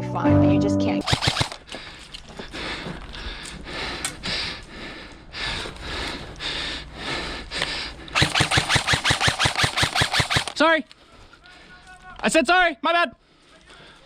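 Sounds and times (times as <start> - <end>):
airsoft gun firing full-auto: 1.0 - 1.6, 8.2 - 10.6.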